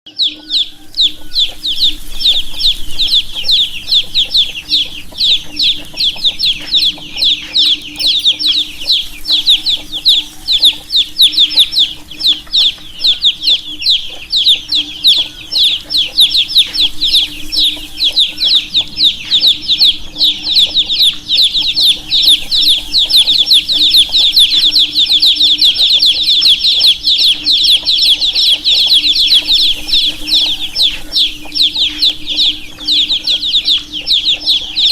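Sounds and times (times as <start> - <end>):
baby chicks peeping: 0.1 - 34.9
faint steady hum: 0.1 - 34.9.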